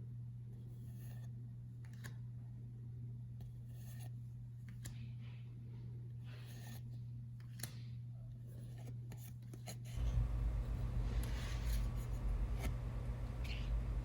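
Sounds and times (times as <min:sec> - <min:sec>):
playing cards clicking and sliding: 0:08.6 - 0:14.0
low rubbing handling noise: 0:10.0 - 0:14.0
steady low hum: 0:10.0 - 0:14.0.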